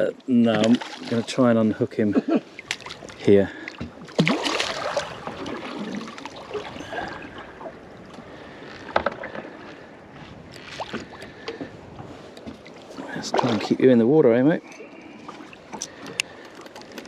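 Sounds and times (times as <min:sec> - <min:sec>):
water sloshing against boat hull: 0:00.3 - 0:17.0.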